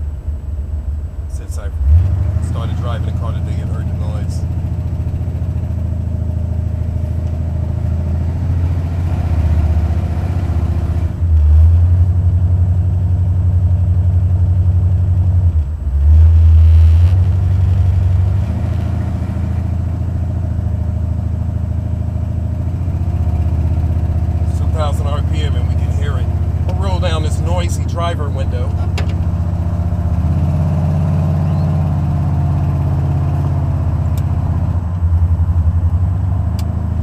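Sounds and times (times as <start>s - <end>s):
car engine running: 0.0s - 37.0s
engine valvetrain tick: 23.8s - 29.3s, 34.0s - 35.3s, 36.5s - 36.8s.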